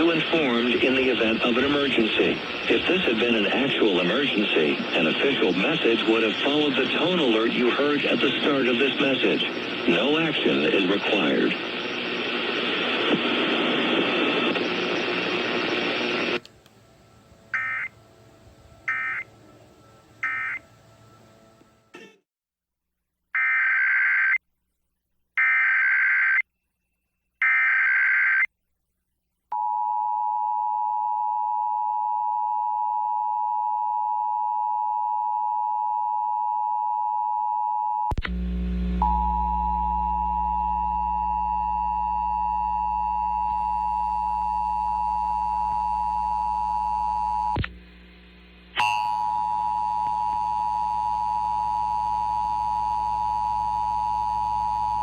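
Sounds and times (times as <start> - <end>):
low hum: 0.2 - 17.5, 38.1 - 51.7.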